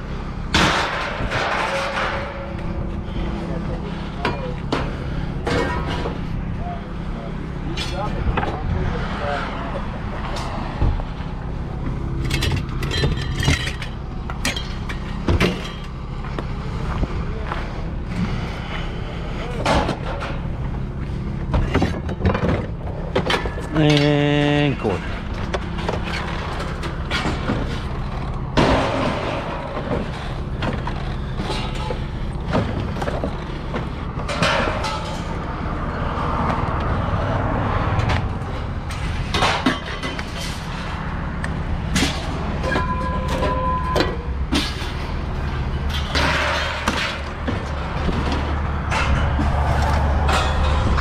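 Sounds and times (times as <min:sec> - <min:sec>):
scrap metal clanking: 0:00.5 - 0:03.2, 0:24.9 - 0:35.6, 0:38.0 - 0:41.1, 0:41.9 - 0:45.2, 0:45.8 - 0:51.0
metallic ring: 0:42.6 - 0:44.3.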